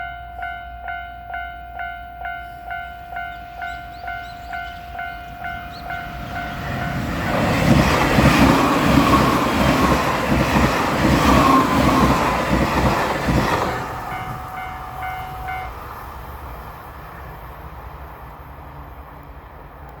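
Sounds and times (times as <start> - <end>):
level crossing warning bell: 0.0 - 15.9
train wheels clacking over rail joints: 6.1 - 15.4.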